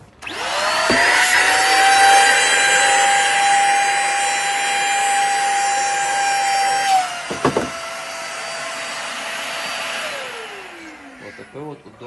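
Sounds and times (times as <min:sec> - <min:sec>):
vacuum cleaner motor whining: 0:00.2 - 0:12.0
short knock: 0:07.3 - 0:07.8.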